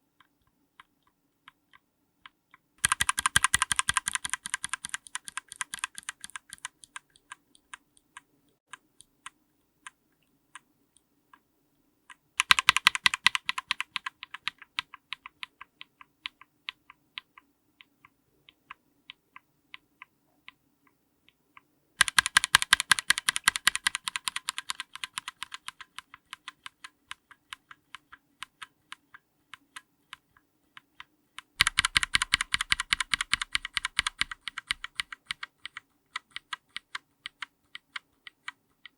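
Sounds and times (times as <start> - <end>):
mechanical keyboard switch clacking: 2.8 - 8.2, 12.4 - 16.4, 22.0 - 29.0, 31.6 - 38.5.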